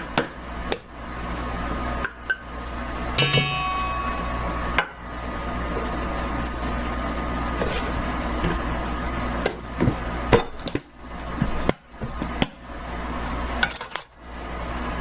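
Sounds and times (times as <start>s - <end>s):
low background hum: 0.0s - 15.0s
mixing bowl and utensils clinking: 1.8s - 5.0s.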